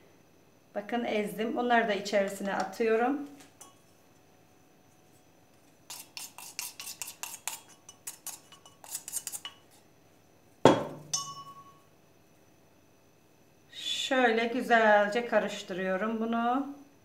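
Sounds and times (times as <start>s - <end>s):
metal spoon clinking against cup: 5.9s - 9.7s, 10.7s - 11.9s
ringing clank: 10.7s - 11.9s.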